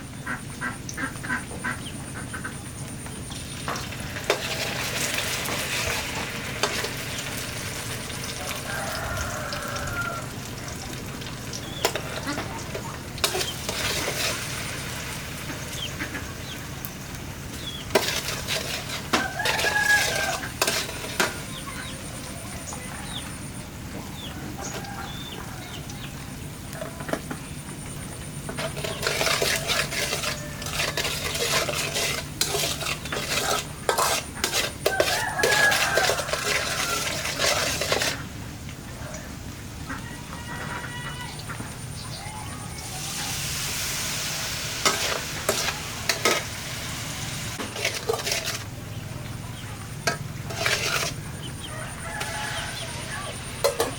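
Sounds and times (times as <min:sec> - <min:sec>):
chickens calling: 0:00.0 - 0:53.9
food sizzling in a pan: 0:03.2 - 0:23.6, 0:27.8 - 0:38.4, 0:42.1 - 0:48.7, 0:49.6 - 0:53.9
utensil scraping a pan: 0:03.8 - 0:10.2, 0:11.8 - 0:16.3, 0:17.5 - 0:22.1, 0:28.4 - 0:38.3, 0:43.0 - 0:48.7, 0:50.0 - 0:53.9.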